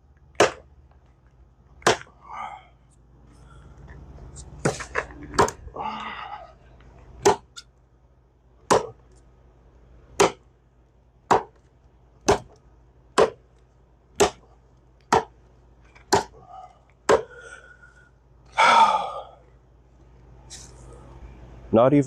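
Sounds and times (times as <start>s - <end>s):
axe chopping wood: 0.3s - 0.7s, 1.8s - 2.2s, 4.6s - 5.6s, 7.2s - 7.6s, 8.6s - 9.0s, 10.2s - 10.4s, 11.3s - 12.6s, 13.2s - 13.5s, 14.2s - 14.5s, 15.1s - 15.4s, 16.0s - 16.4s, 17.0s - 17.4s.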